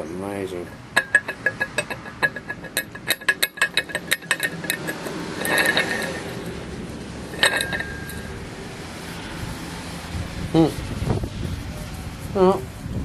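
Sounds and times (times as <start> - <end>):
metal parts scraping and handling: 0.6 - 8.6
ringing metal clink: 1.0 - 6.7, 7.3 - 8.5.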